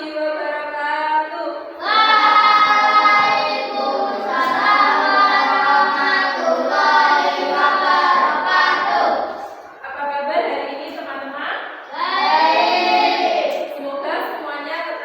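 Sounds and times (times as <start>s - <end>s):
children singing in unison: 1.8s - 9.6s, 11.9s - 13.7s.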